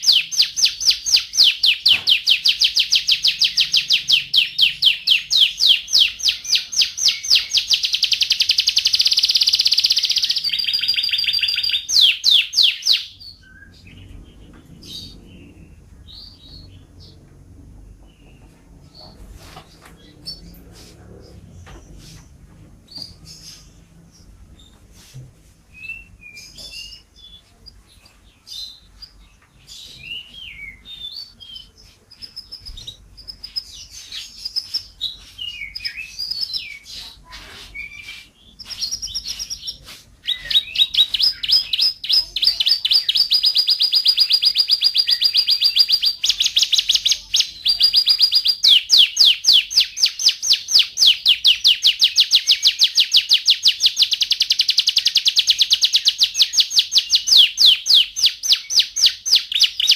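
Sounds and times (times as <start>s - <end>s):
canary singing: 0.0s - 24.8s, 25.7s - 59.9s.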